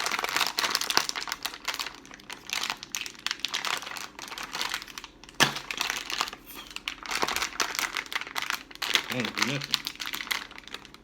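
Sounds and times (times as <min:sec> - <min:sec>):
plastic wrapper crinkling: 0:00.0 - 0:11.0.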